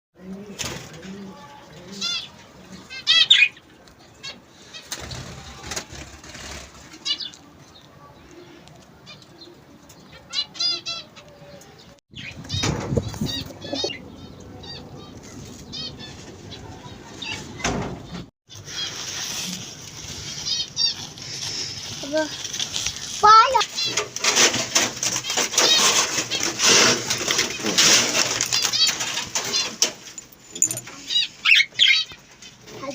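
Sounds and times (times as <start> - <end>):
cage birds chirping: 0.2 - 32.9
wings flapping: 4.7 - 7.4, 18.6 - 30.0.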